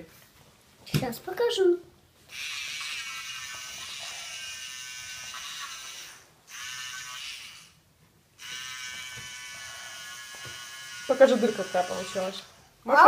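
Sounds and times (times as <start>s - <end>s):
toy drill whirring: 2.3s - 7.8s, 8.4s - 12.6s.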